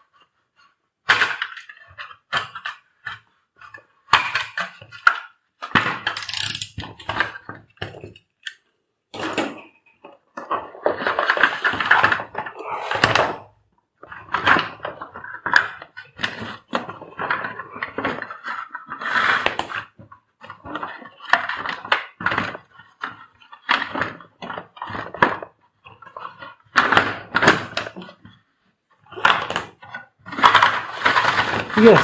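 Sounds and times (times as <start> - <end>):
plastic cord reel clattering: 4.2 - 8.2, 29.2 - 32.0.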